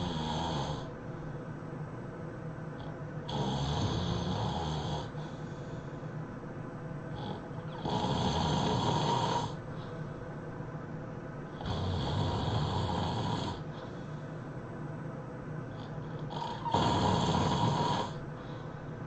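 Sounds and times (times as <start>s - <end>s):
person snoring heavily: 0.0s - 0.9s, 3.3s - 5.4s, 7.1s - 9.6s, 11.6s - 13.9s, 15.8s - 18.6s
quiet breathing: 0.0s - 19.0s.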